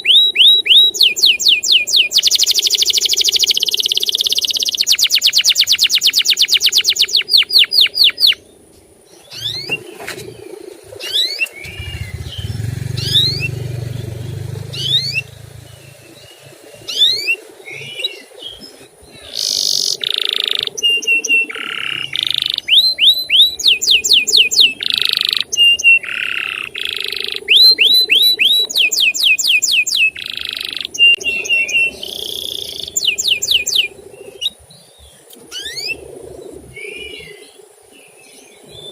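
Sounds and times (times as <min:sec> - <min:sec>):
canary singing: 0:00.0 - 0:08.6, 0:09.2 - 0:36.1
low rumble: 0:11.6 - 0:16.6.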